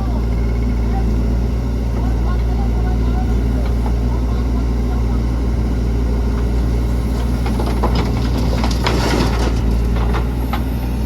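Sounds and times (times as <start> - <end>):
diesel engine running: 0.0 - 11.0
clattering knocks and scrapes: 6.3 - 10.8.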